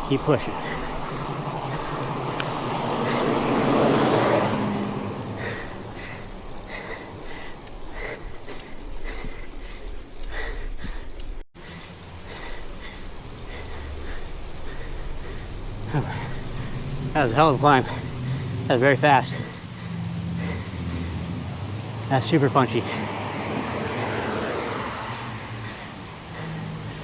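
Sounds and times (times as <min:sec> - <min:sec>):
car passing by: 0:00.0 - 0:09.6, 0:11.6 - 0:27.0
wind rumble on microphone: 0:00.0 - 0:22.1.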